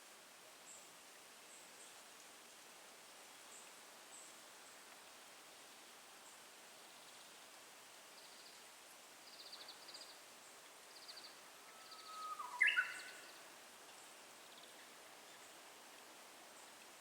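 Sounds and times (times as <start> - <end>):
bush warbler singing: 12.2 - 13.2.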